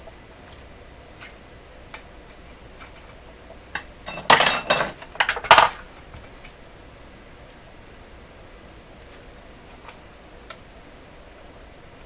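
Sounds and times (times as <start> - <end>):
small objects clattering on workbench: 4.1 - 5.8.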